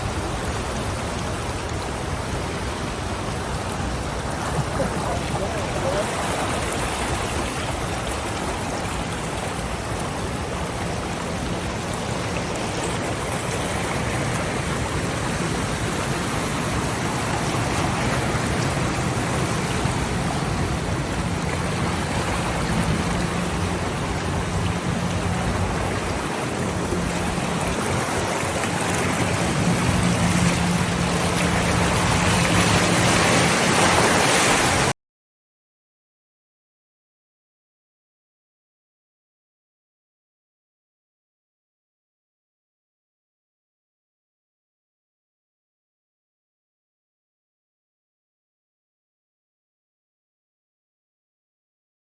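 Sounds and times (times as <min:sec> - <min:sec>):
dense steady noise: 0:00.0 - 0:34.2
vehicle engine humming: 0:10.6 - 0:34.2.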